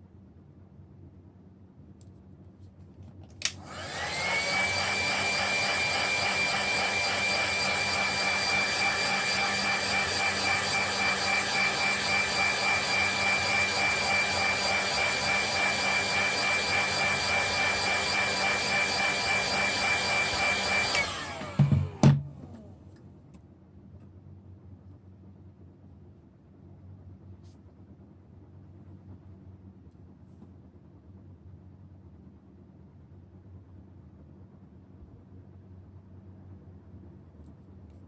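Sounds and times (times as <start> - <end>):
small electric motor whining: 3.7 - 22.7.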